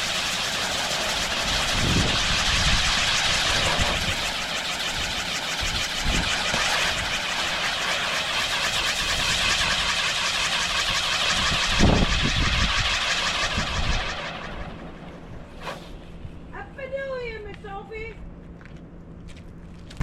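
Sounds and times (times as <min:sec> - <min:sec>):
firework crackle and hiss: 0:00.0 - 0:14.6, 0:15.4 - 0:16.3.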